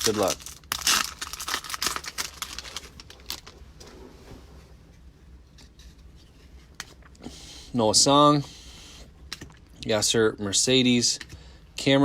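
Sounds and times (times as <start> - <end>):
card wrapper crinkling: 0.0 - 3.6.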